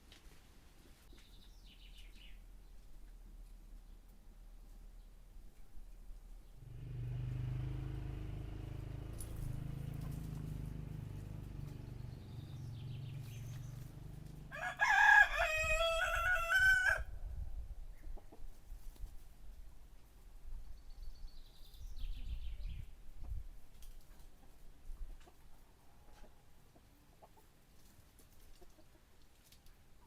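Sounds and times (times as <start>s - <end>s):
faint small birds chirping: 0.8s - 14.5s, 20.0s - 26.4s
rooster crowing: 14.5s - 17.1s.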